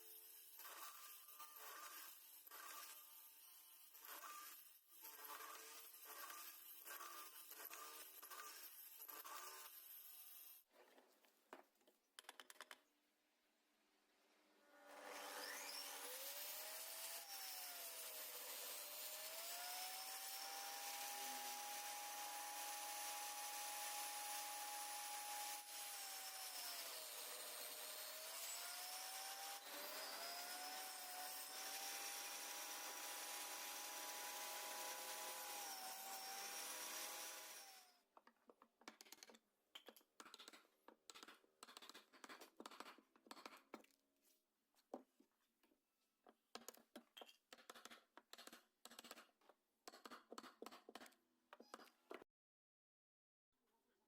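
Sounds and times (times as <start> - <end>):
power tool motor on wood: 14.7 - 37.9.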